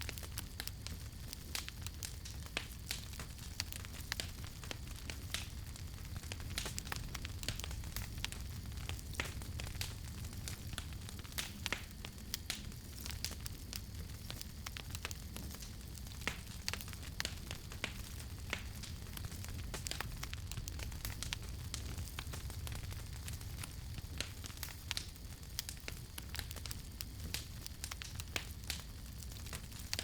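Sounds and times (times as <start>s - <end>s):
campfire crackling and popping: 0.0s - 30.0s.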